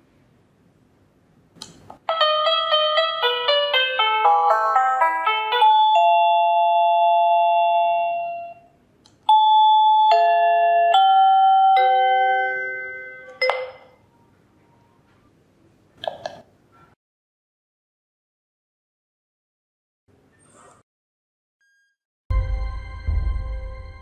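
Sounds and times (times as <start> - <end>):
electronic doorbell chime melody: 2.1 - 14.0.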